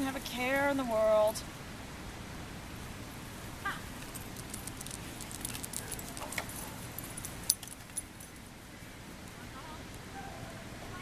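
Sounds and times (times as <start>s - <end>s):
outdoor background noise: 0.0s - 11.0s
metallic jingling and clinking: 4.0s - 8.5s.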